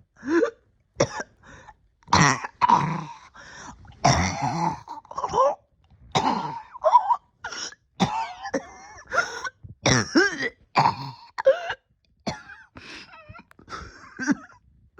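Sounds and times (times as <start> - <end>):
person coughing: 1.0 - 1.4, 4.0 - 5.5, 6.2 - 14.6.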